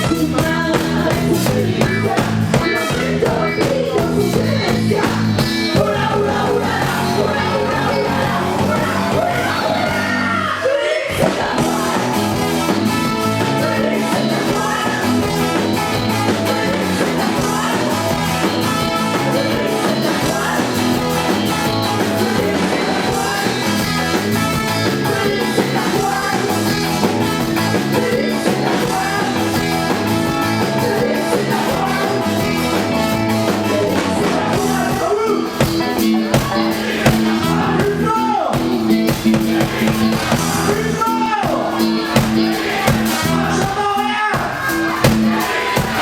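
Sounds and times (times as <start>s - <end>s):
person singing: 0.0s - 46.0s
ska-punk band playing live: 0.0s - 46.0s.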